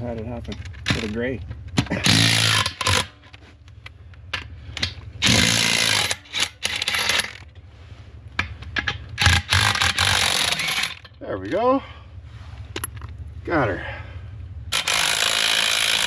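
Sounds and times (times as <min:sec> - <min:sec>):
impact wrench hammering: 0:01.8 - 0:03.4, 0:04.8 - 0:07.4, 0:08.4 - 0:11.1, 0:14.7 - 0:16.0.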